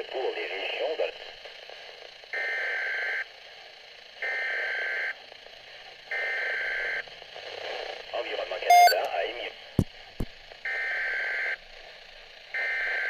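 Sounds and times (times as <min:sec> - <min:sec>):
radio hiss: 0:00.0 - 0:02.0, 0:07.3 - 0:10.3
high-pitched alert beeps: 0:08.7 - 0:09.1.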